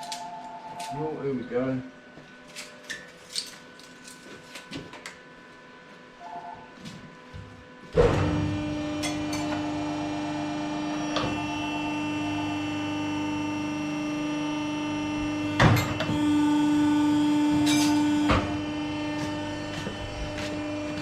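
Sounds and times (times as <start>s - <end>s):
electrical machine hum: 0.0s - 21.0s.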